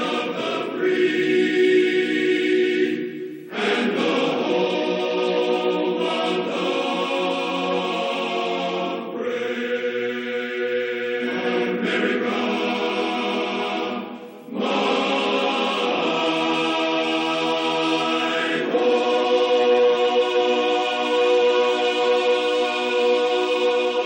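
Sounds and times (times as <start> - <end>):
choir singing held chords: 0.0 - 24.0.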